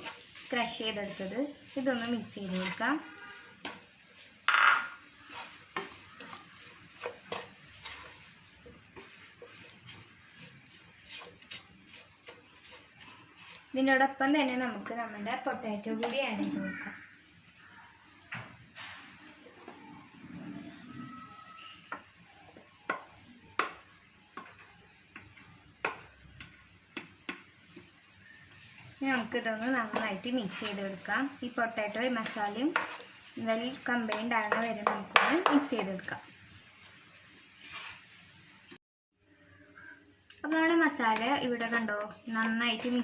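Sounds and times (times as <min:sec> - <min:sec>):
spoon scraping a frying pan: 0:00.0 - 0:17.0, 0:18.8 - 0:38.3, 0:40.9 - 0:43.0
light sizzle: 0:00.0 - 0:43.0
utensil knocking against pan: 0:34.1 - 0:35.9.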